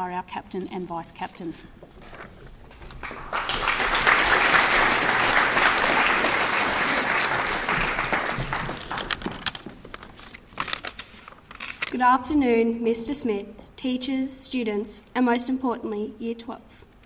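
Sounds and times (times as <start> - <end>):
audience applauding: 2.8 - 9.6.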